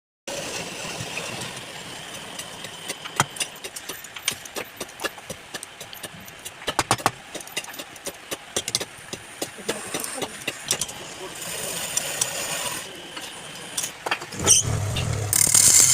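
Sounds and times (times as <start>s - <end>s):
sharp clicks and knocks: 2.2s - 11.0s
wood lathe running: 14.6s - 15.9s.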